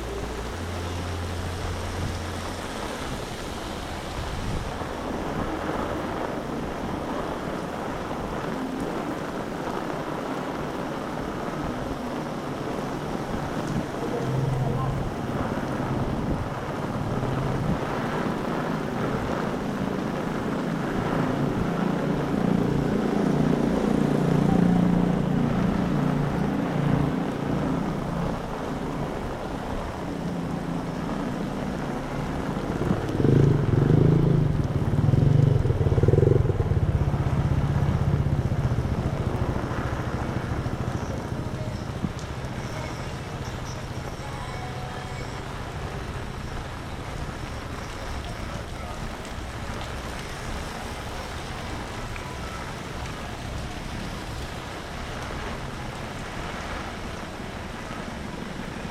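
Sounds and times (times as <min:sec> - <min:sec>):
rain: 0:00.0 - 0:58.9
vehicles passing on wet street: 0:00.0 - 0:58.9
wind: 0:00.0 - 0:58.9.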